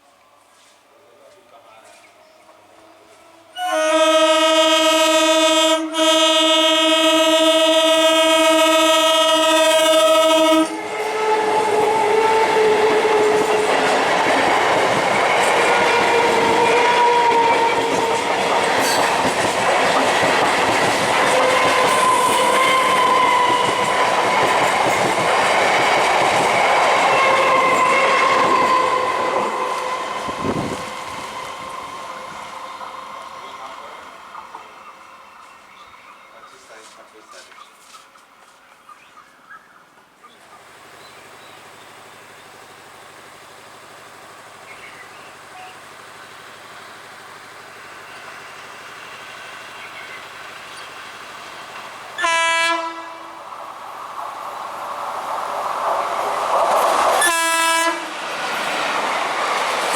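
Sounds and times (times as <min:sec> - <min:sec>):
train wheels rushing on rail: 0:01.4 - 0:39.1, 0:40.4 - 0:59.9
train horn blast: 0:02.8 - 0:13.8, 0:15.8 - 0:19.2, 0:21.3 - 0:24.0, 0:27.1 - 0:31.8, 0:52.2 - 0:53.4, 0:57.2 - 0:58.2.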